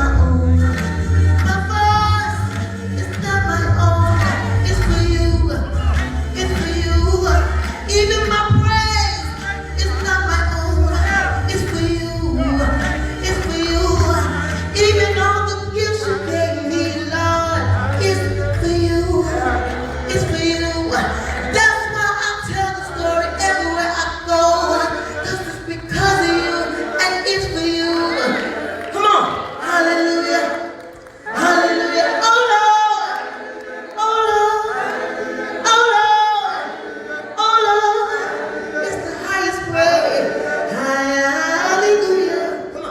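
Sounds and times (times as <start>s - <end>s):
gospel band with heavy bass: 0.0s - 42.9s
people singing: 0.0s - 42.9s.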